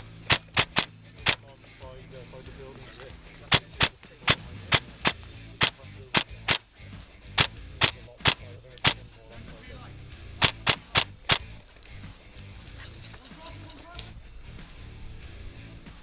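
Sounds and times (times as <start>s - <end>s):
airsoft rifle shots: 0.2s - 1.5s, 3.4s - 6.7s, 7.3s - 9.1s, 10.4s - 11.6s.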